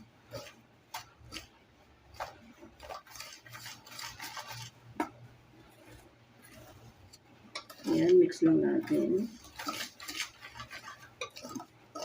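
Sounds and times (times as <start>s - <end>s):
utensil scraping around bowl: 0.0s - 12.0s.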